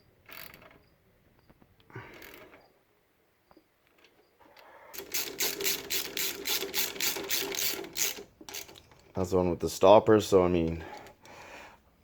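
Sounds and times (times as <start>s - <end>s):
socket ratchet wrench clicking: 5.0s - 8.8s.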